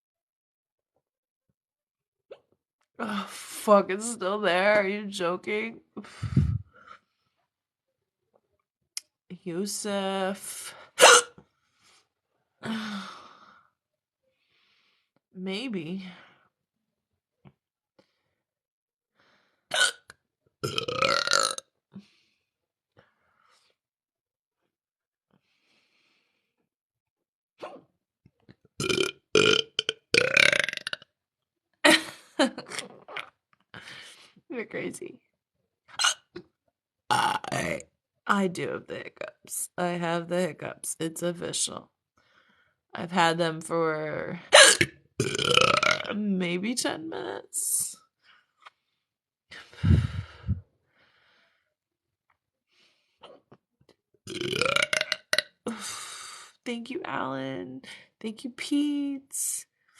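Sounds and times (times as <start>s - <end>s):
woman belching: 19.7s - 21.6s, 28.8s - 31.0s, 37.1s - 37.8s, 44.6s - 46.1s, 54.3s - 55.5s
woman burping: 19.7s - 21.6s, 28.8s - 31.0s, 32.6s - 33.3s, 36.0s - 36.4s, 37.1s - 37.8s, 44.5s - 46.1s, 54.3s - 55.4s.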